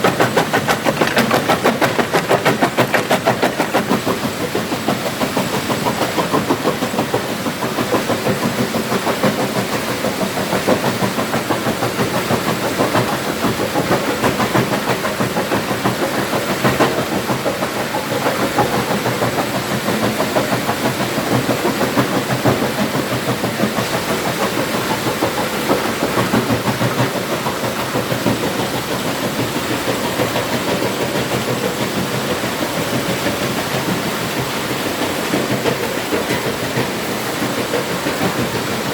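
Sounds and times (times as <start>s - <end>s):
stone crusher rattling: 0.2s - 4.0s.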